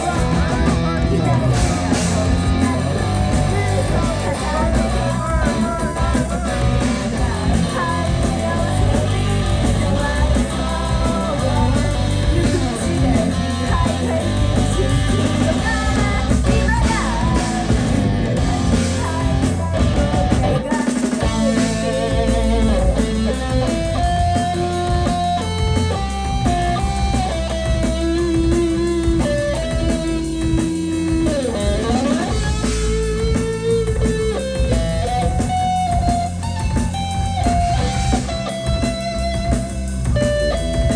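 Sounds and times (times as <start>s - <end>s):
person singing: 0.0s - 23.5s
live rock band playing: 0.0s - 40.9s.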